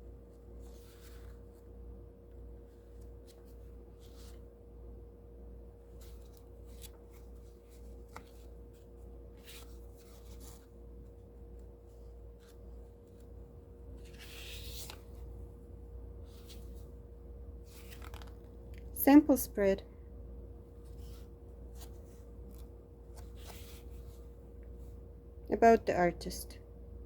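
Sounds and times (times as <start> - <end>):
faint steady hum: 0.0 - 27.0
paper pages rustling: 0.2 - 1.8, 2.6 - 4.6, 5.8 - 15.6, 16.2 - 18.9, 20.7 - 25.0.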